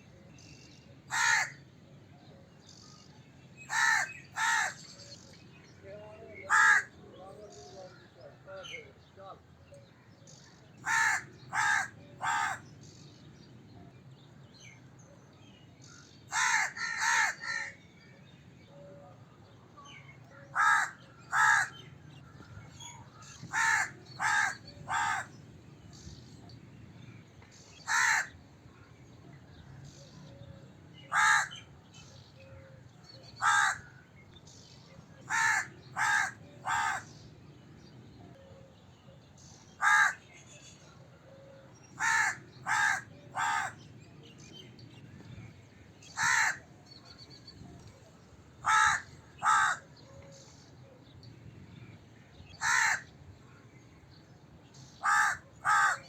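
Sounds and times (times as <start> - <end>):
crow cawing: 1.1 - 1.6, 3.7 - 4.8, 6.5 - 7.0, 10.8 - 12.6, 16.3 - 17.8, 20.5 - 21.8, 23.2 - 25.3, 27.9 - 28.4, 31.1 - 31.6, 33.4 - 33.9, 35.3 - 37.1, 39.8 - 40.2, 42.0 - 43.8, 46.2 - 46.6, 48.6 - 49.9, 52.6 - 53.1, 55.0 - 56.0.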